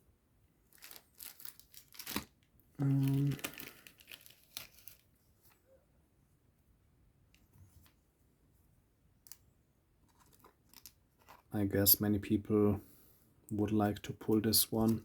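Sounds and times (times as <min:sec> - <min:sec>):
wrappers crinkling and tearing: 0:00.7 - 0:05.2
person humming: 0:02.8 - 0:03.5.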